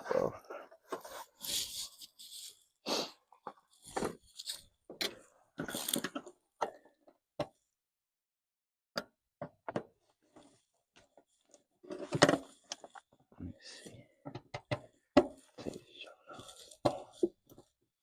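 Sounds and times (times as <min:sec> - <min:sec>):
parts being handled: 0:03.4 - 0:06.8.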